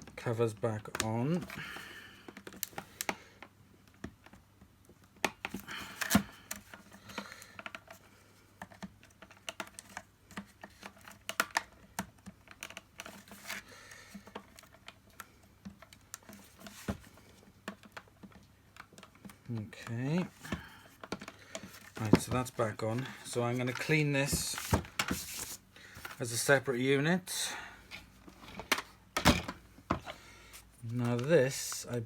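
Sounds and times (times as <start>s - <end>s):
plastic parts clicking together: 8.6s - 16.8s.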